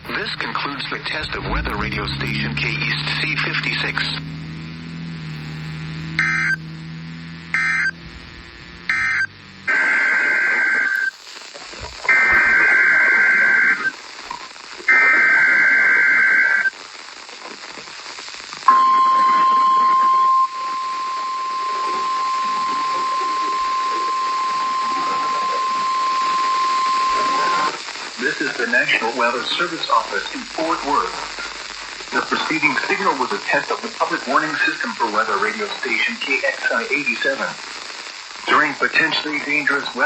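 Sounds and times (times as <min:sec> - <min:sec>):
steady warning alarm tone: 0:00.0 - 0:11.1, 0:18.7 - 0:27.8
warbling two-tone data bursts: 0:00.0 - 0:11.1
radio background hiss: 0:00.0 - 0:40.0.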